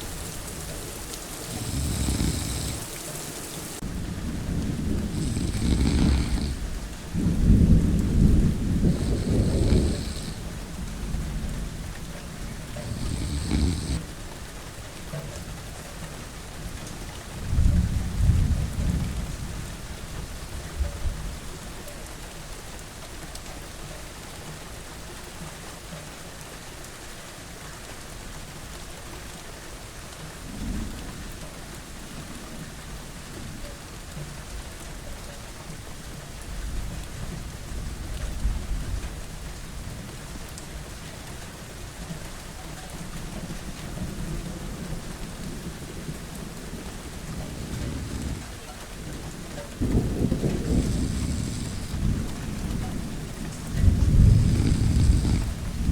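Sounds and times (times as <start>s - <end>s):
steady rain: 0.0s - 55.9s
thunder rolling: 3.5s - 14.0s, 44.9s - 55.9s.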